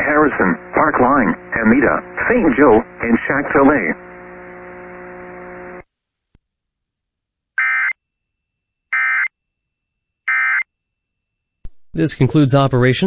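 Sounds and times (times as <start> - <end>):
buzzy digital data tones: 0.0 - 5.8
low steady hum: 0.0 - 5.9.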